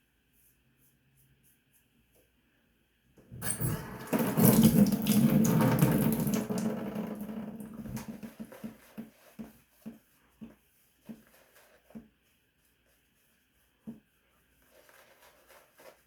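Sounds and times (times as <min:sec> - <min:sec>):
tap water running into sink: 0:03.2 - 0:09.0
short water splashes: 0:03.3 - 0:08.6.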